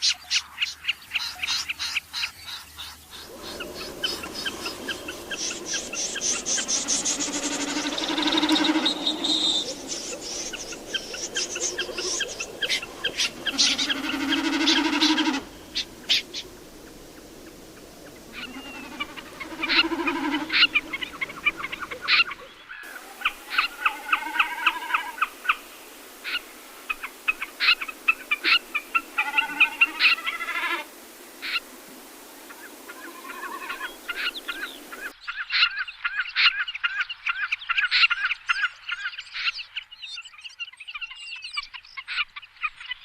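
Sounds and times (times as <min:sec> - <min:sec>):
harsh bird calls: 0:00.0 - 0:35.2
rattling bird calls: 0:03.2 - 0:16.5, 0:18.3 - 0:25.3.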